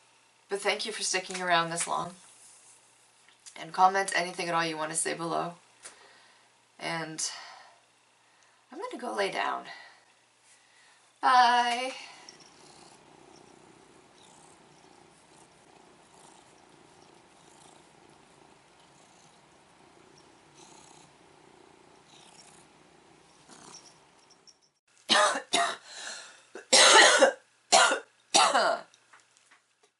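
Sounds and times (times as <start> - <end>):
faint low hum: 0.0 - 29.9
woman coughing hard: 25.1 - 25.9, 26.6 - 28.9.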